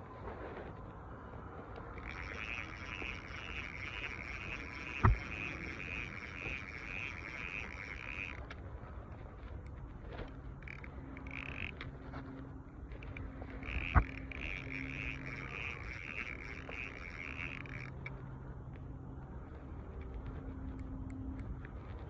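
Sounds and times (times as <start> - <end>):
frogs trilling: 1.9 - 8.5, 10.5 - 12.2, 13.0 - 18.2.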